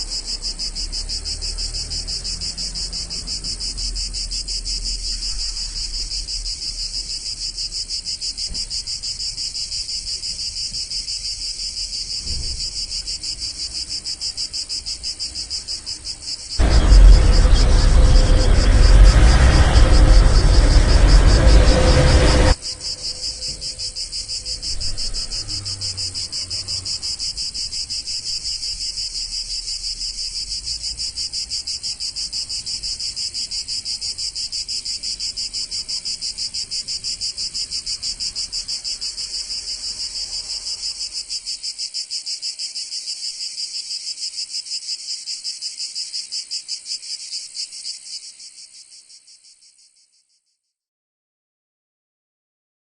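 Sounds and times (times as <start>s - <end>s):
high-pitched pulsing chirring: 16.6s - 27.8s
low rumble: 16.6s - 30.7s.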